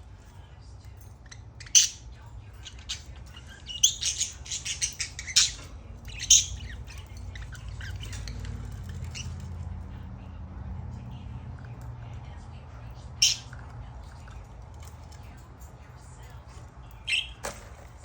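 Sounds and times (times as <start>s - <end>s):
low steady hum: 0.0s - 18.0s
budgerigar chirping: 2.7s - 8.4s, 13.2s - 13.5s, 17.1s - 17.4s.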